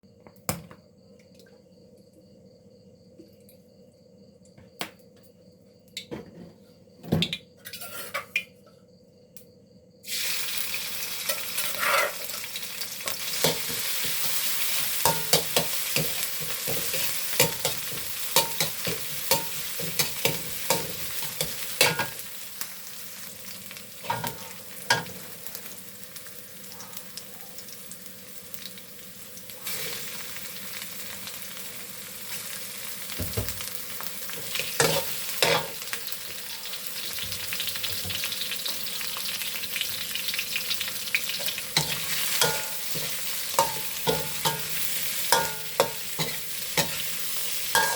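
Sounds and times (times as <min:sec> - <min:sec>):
food sizzling in hot oil: 0:10.0 - 0:47.9
spatula scraping pan: 0:11.6 - 0:12.3.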